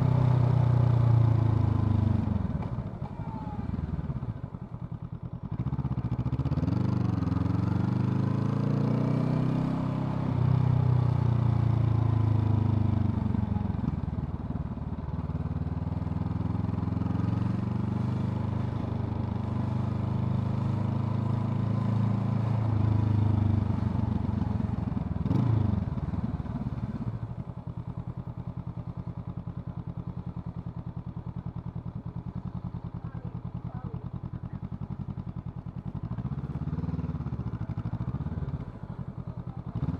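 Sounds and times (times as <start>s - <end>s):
motorcycle engine revving and idling: 0.0s - 39.9s.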